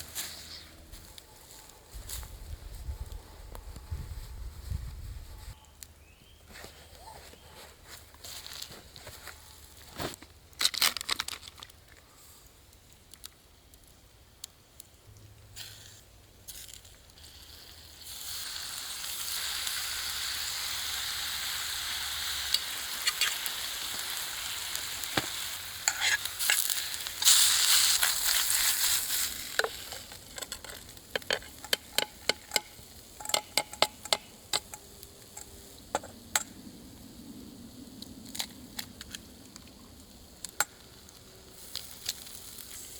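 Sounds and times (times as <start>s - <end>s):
food sizzling in a frying pan: 17.4s - 30.2s
utensil tapping and scraping pan: 29.6s - 34.8s.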